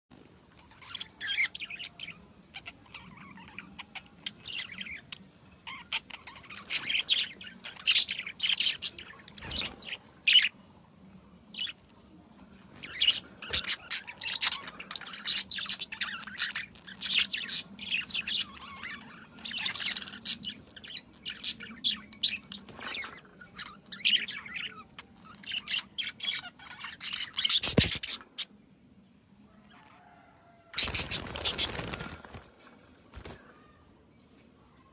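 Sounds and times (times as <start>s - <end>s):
small birds chirping: 0.1s - 34.9s.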